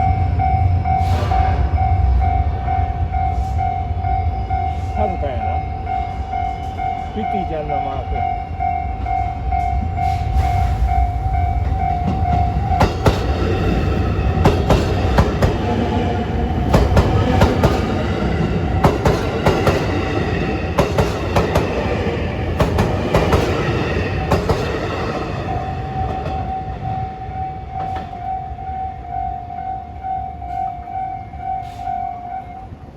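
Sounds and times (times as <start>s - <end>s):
level-crossing alarm ringing: 0.0s - 32.9s
train wheels clattering over rail joints: 9.1s - 26.5s.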